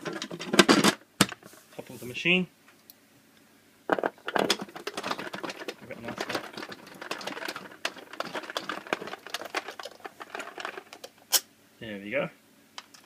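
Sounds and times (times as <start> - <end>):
sharp clatter: 4.0 - 11.4
vending machine parts clicking: 4.0 - 11.4, 12.8 - 13.0.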